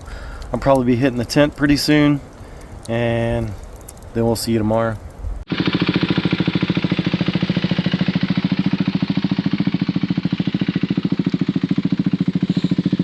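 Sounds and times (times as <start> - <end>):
motorcycle engine idling: 5.5 - 13.0.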